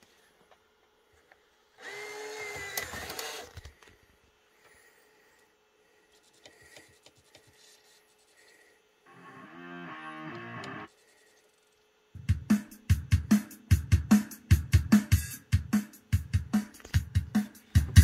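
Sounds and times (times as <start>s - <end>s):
small electric motor whine: 1.8s - 3.6s.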